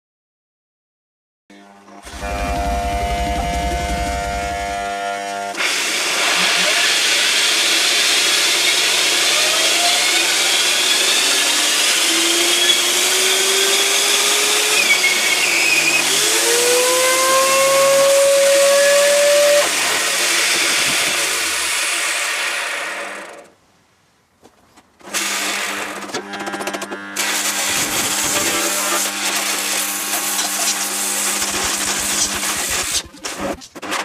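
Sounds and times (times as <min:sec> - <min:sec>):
electric hum of held tones: 0:01.5 - 0:05.6, 0:26.2 - 0:33.6
whining tones rising in pitch: 0:02.1 - 0:05.0, 0:08.3 - 0:22.0.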